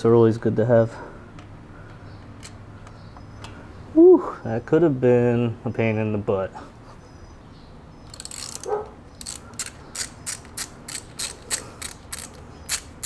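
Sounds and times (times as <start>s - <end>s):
hand ratchet clicking: 8.1s - 13.0s.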